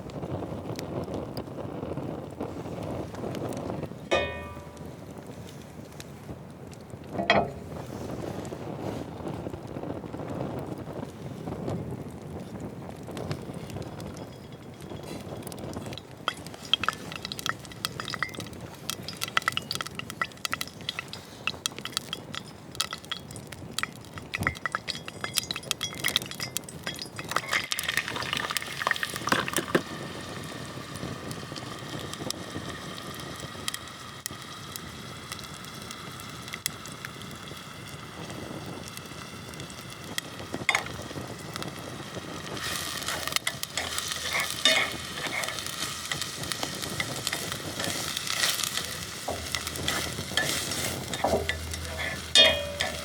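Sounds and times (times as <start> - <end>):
food sizzling in a pot: 4.1 - 5.0, 13.4 - 53.0
utensil scraping a pot: 14.9 - 29.8, 42.6 - 53.0.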